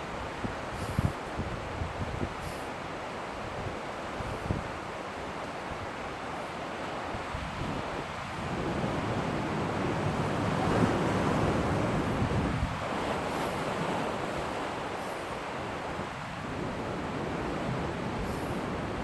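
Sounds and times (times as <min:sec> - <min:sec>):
sea waves rushing: 0:02.4 - 0:19.0
wind buffeting microphone: 0:07.2 - 0:14.6.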